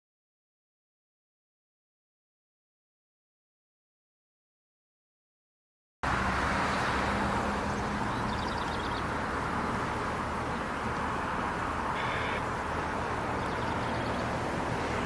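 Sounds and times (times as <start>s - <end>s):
road traffic noise: 6.0s - 15.0s.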